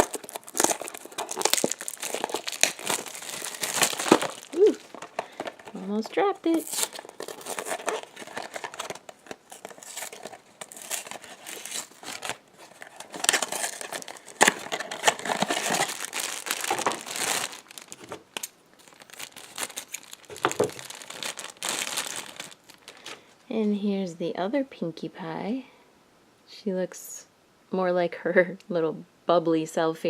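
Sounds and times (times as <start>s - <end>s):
packaging crinkling and tearing: 0.0s - 23.2s.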